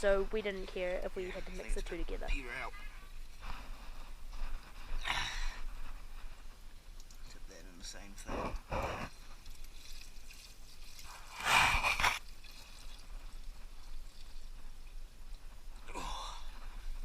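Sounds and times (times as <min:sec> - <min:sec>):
liquid pouring and splashing: 0:09.1 - 0:15.0
faint liquid dribbling: 0:09.1 - 0:15.9.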